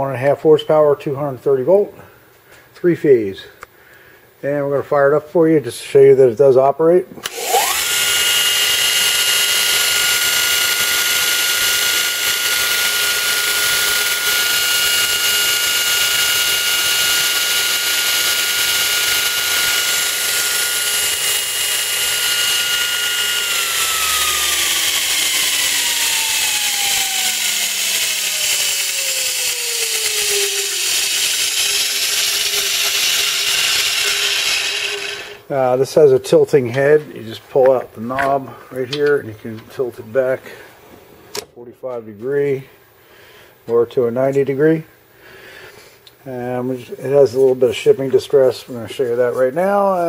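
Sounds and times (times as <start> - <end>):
belt sander motor whine: 7.2 - 35.5.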